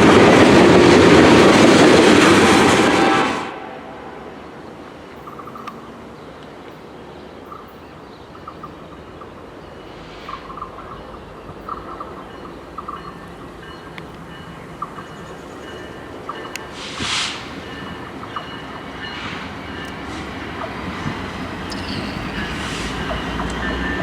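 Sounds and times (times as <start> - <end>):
low outdoor background noise: 3.6 - 17.0
brief soft hiss: 16.8 - 17.5
short high chirps: 21.4 - 23.4.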